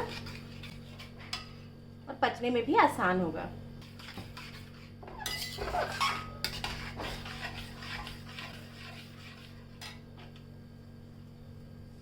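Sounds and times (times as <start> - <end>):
metal spoon scraping a pan: 0.0 - 1.6, 3.8 - 10.3.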